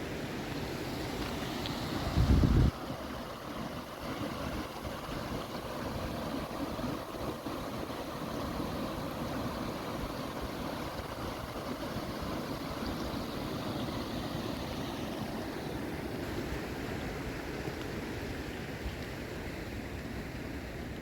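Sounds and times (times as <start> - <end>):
fast river water rushing: 0.0 - 21.0
wind rumble on microphone: 2.0 - 2.8.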